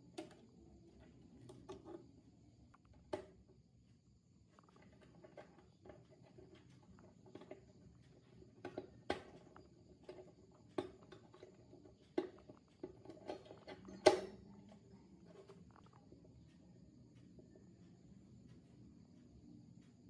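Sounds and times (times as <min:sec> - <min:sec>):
small hard parts clicking: 0:04.5 - 0:16.0.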